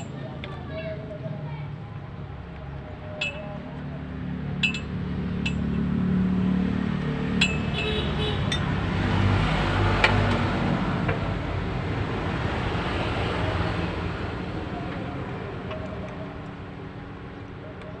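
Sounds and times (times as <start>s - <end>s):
metal tools clinking: 4.6s - 5.7s, 7.4s - 7.7s.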